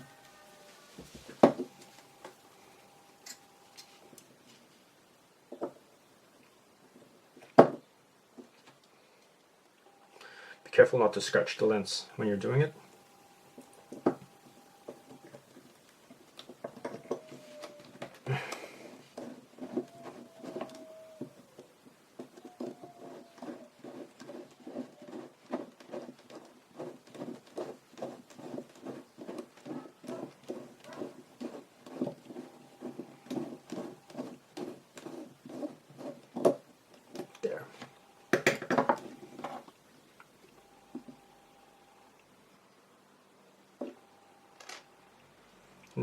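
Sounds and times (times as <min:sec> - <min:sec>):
faint squeaks: 0:16.5 - 0:36.2.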